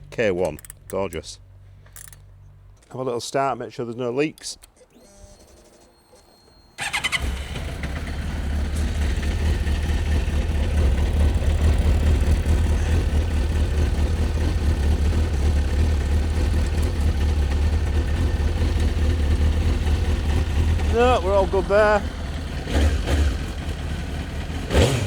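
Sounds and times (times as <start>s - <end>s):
motorcycle engine cranking: 0.5s - 1.2s, 6.8s - 22.0s
motorcycle engine idling: 6.8s - 25.0s.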